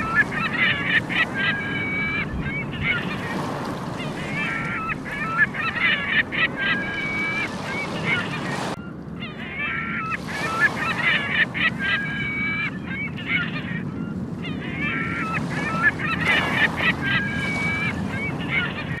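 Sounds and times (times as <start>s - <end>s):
sea waves washing on beach: 0.0s - 8.8s, 15.1s - 19.0s
gulls calling: 0.0s - 19.0s.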